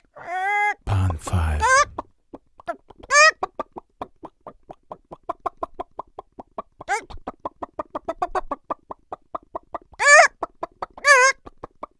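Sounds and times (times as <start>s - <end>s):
cartoon chicken clucking: 1.5s - 11.9s.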